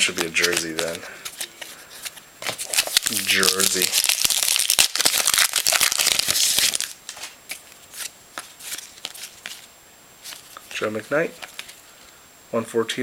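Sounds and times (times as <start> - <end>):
wrapper crinkling and rustling: 0.0 - 7.3, 10.2 - 11.8
cards clicking and flicking: 0.0 - 9.6, 10.2 - 11.8.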